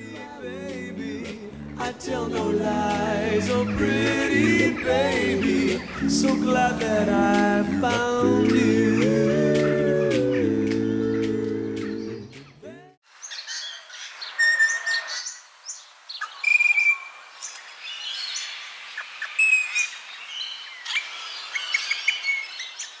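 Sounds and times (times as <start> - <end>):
song: 0.0 - 12.4
birds chirping and singing: 2.8 - 12.6.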